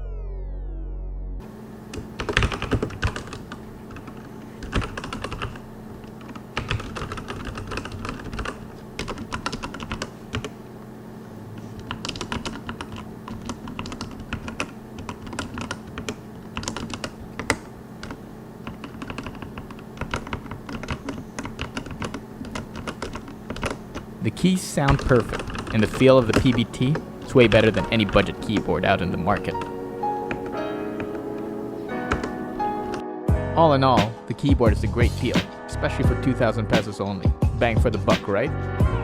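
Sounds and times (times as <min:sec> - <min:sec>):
mechanical keyboard typing: 0:01.9 - 0:10.5, 0:11.8 - 0:24.1, 0:24.8 - 0:33.0.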